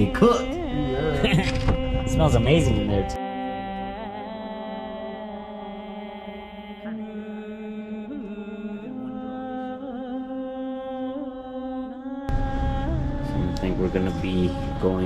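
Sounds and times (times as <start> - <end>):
steady drone: 0.0 - 5.9, 12.3 - 15.0
person chanting long notes: 0.0 - 11.0, 12.0 - 15.0.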